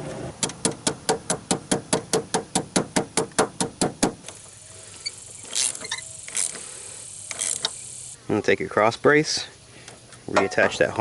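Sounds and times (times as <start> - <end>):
ratchet wrench clicking: 4.3 - 8.2.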